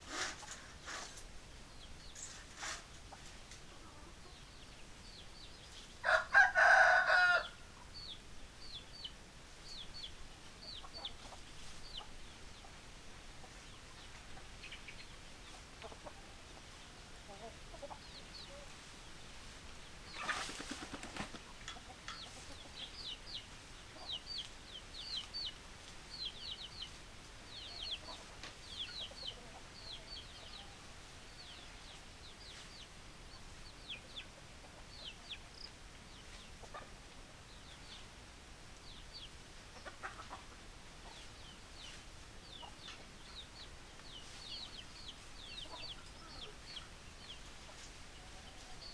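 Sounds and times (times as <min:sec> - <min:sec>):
chicks peeping: 0:07.8 - 0:18.9, 0:20.1 - 0:25.6, 0:26.2 - 0:38.0, 0:38.8 - 0:48.9
chicken clucking: 0:10.6 - 0:18.9, 0:20.1 - 0:25.6, 0:26.4 - 0:38.0, 0:39.2 - 0:48.9.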